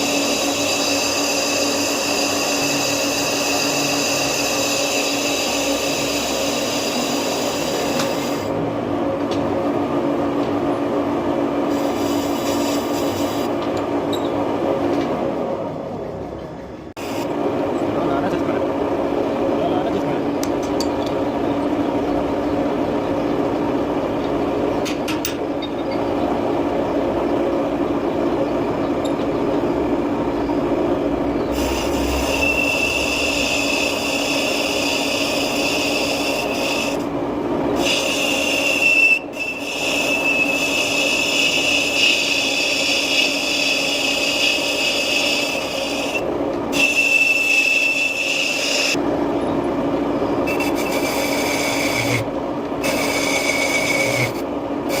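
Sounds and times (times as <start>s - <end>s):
high cutting whine: 0.0s - 8.6s, 25.5s - 37.1s, 37.7s - 55.0s
metal lathe humming: 0.0s - 8.8s, 25.6s - 55.0s.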